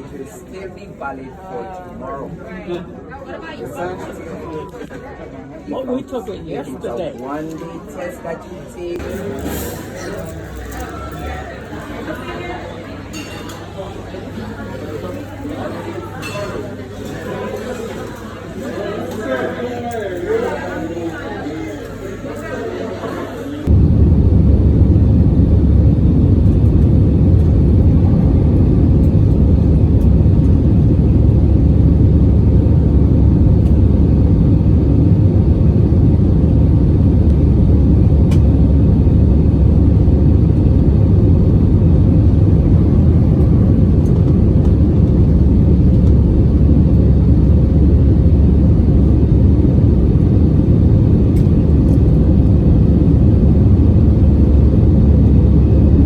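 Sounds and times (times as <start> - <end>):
airliner engine rumble in cabin: 23.6 - 56.0.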